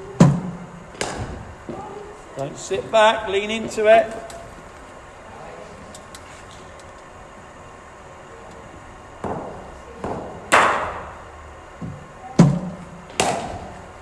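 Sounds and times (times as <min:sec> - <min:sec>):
cricket bat striking ball: 0:00.2 - 0:01.4, 0:09.2 - 0:11.1, 0:12.4 - 0:13.7.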